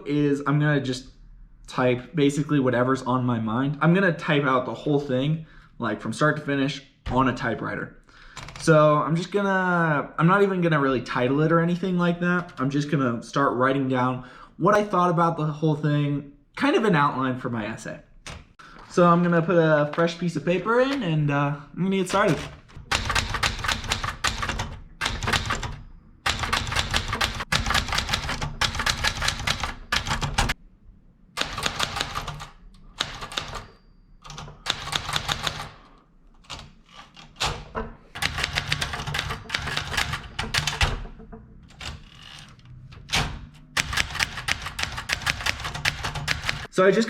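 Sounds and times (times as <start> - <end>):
typewriter keys clicking: 22.2 - 30.6, 31.4 - 33.7, 34.3 - 35.8, 38.2 - 41.1, 43.1 - 46.7.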